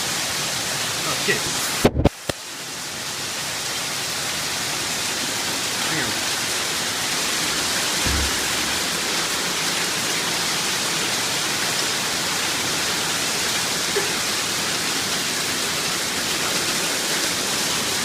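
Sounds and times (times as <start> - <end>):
rain: 0.0 - 18.0
hail pelting down: 5.1 - 18.0.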